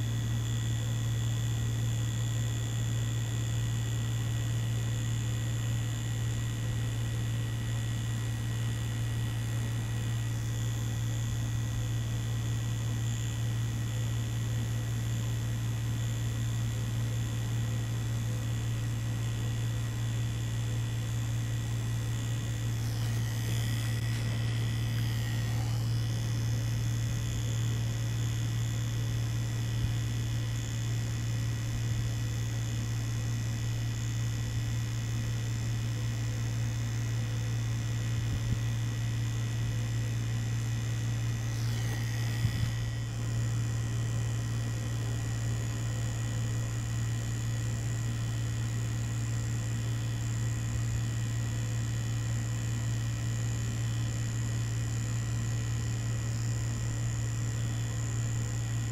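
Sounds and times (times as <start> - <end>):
tattoo machine buzzing: 0.0 - 58.9
scratchy noise: 22.8 - 26.4.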